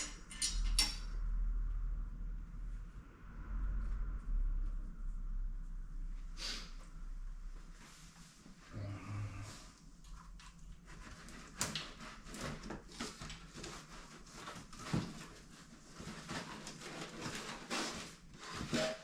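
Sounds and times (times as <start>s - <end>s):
parts clicking and knocking: 0.0s - 1.1s
rustling: 7.6s - 19.0s.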